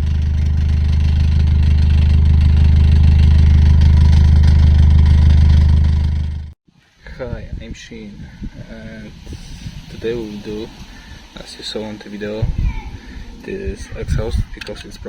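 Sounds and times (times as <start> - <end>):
car engine idling: 0.0 - 6.6.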